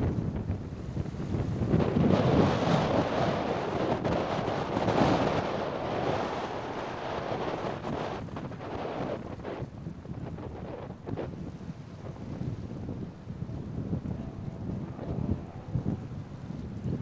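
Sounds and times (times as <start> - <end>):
waves rushing: 0.0 - 16.8
wind buffeting microphone: 0.0 - 17.0.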